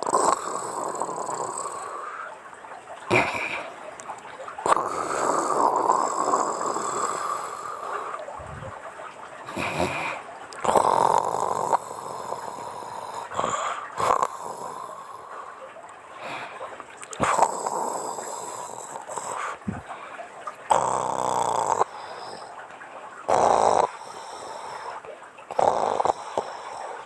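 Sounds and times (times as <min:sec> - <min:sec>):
woman snoring: 0:00.0 - 0:02.0, 0:05.2 - 0:07.6, 0:09.5 - 0:14.8, 0:25.5 - 0:26.5.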